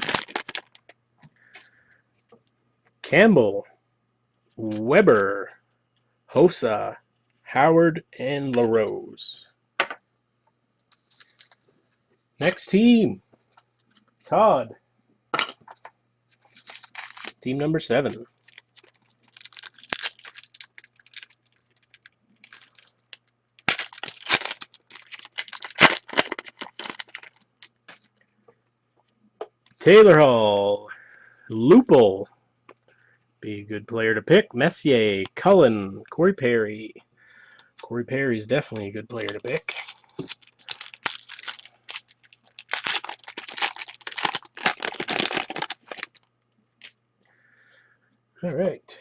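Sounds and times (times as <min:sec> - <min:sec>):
wrapper crinkling and tearing: 0:00.0 - 0:00.9, 0:11.0 - 0:11.6, 0:16.4 - 0:17.4, 0:18.1 - 0:28.1, 0:39.2 - 0:46.3.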